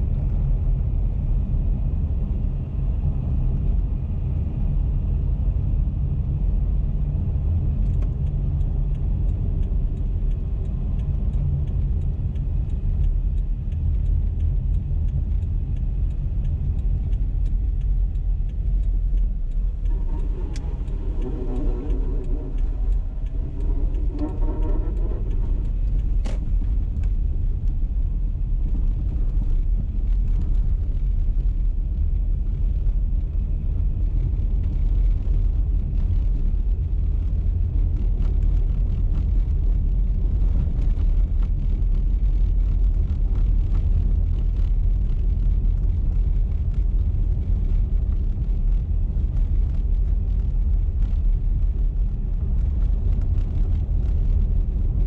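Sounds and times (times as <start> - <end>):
car road and engine rumble: 0.0 - 55.0
light ticks: 6.8 - 55.0
pitched hum: 7.4 - 31.6.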